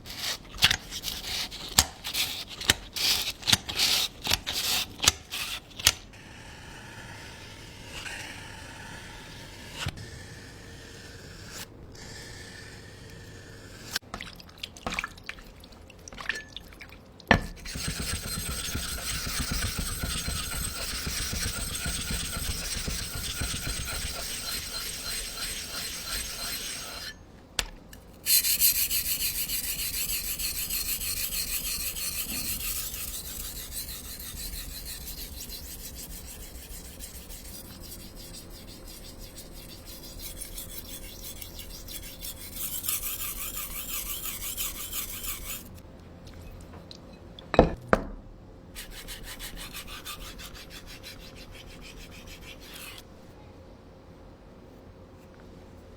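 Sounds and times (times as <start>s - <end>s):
knife rasping on sharpening stone: 17.6s - 27.2s, 28.3s - 45.8s, 48.8s - 53.0s.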